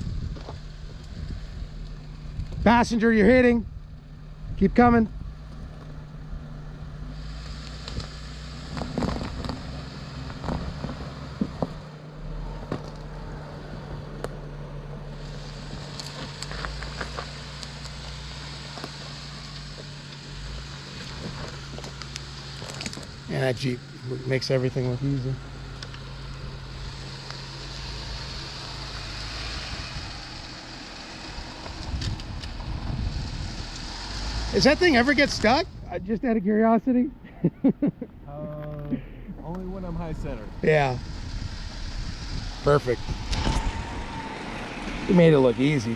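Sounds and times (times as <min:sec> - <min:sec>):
tires scraping on rock: 0:00.0 - 0:37.4, 0:38.2 - 0:45.9
engine running at low revs: 0:00.0 - 0:45.9
wind on microphone: 0:31.6 - 0:33.8, 0:40.8 - 0:45.0.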